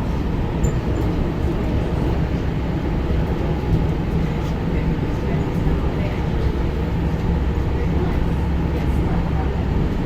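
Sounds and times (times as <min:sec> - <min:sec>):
subway train rumbling on rails: 0:00.0 - 0:10.0.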